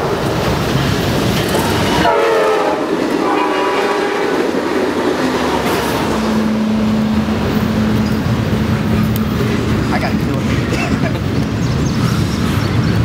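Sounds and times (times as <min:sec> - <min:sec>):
train wheels clacking on rails: 0:00.0 - 0:13.0
train horn: 0:01.6 - 0:04.6, 0:06.1 - 0:08.3.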